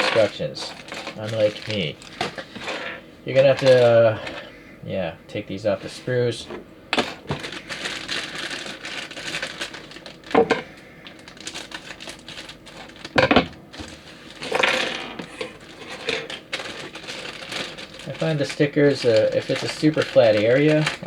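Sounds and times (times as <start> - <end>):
plastic parts clicking and clattering: 0.0 - 2.7, 3.5 - 3.9, 15.9 - 21.0
plastic scraping: 0.0 - 4.5.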